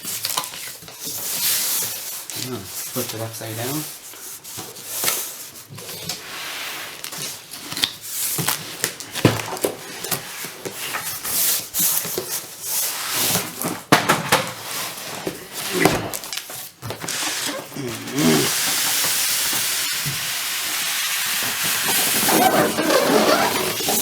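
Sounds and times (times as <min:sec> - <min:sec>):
cardboard scraping and rustling: 0:21.4 - 0:24.0.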